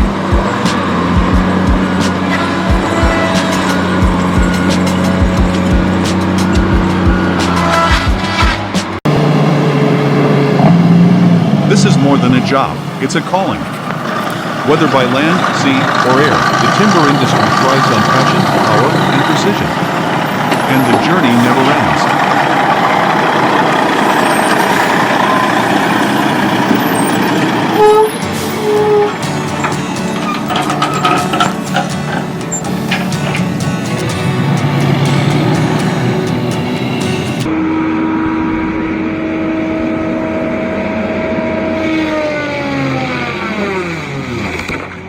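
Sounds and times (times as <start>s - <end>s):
vehicle horn toots: 0.0s - 9.0s, 23.6s - 33.9s
heavy vehicle engine running: 0.0s - 45.0s.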